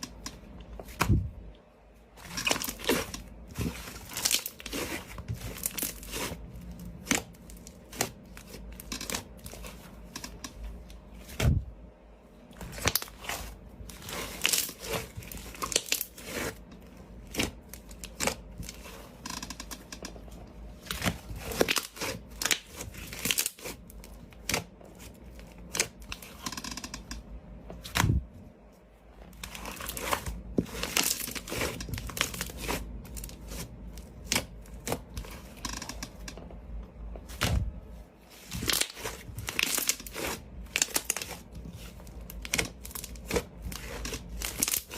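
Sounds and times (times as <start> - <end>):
slime crackling and popping: 2.2 - 10.5, 12.6 - 16.6, 38.4 - 44.9.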